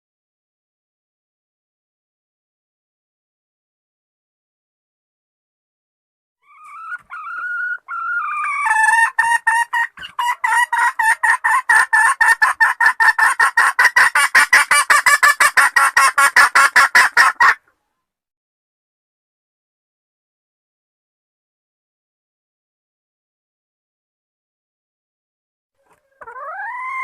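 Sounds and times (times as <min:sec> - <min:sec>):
hen clucking rapidly: 0:06.4 - 0:17.6, 0:25.8 - 0:27.0.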